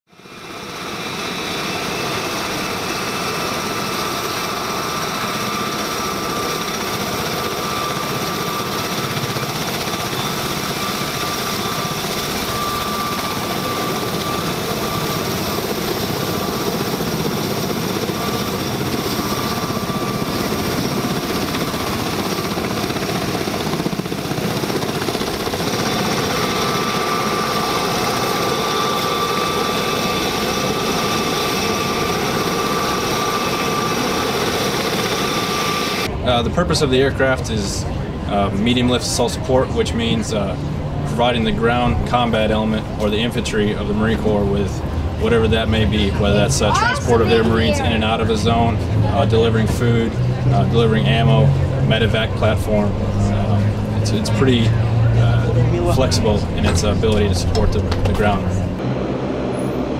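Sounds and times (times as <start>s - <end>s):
aircraft engines heavy thrum: 52.9s - 59.9s.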